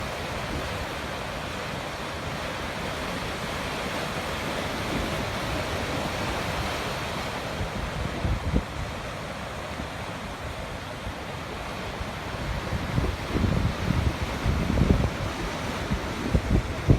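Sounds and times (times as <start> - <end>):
sea waves breaking on shore: 0.0 - 16.9
wind buffeting microphone: 7.6 - 9.0, 12.0 - 16.9.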